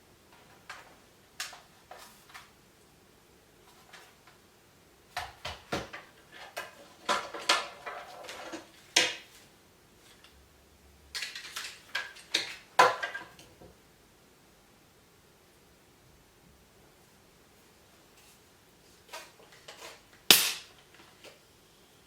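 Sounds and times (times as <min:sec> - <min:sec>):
hard objects clattering: 0:05.2 - 0:09.4, 0:11.2 - 0:13.7.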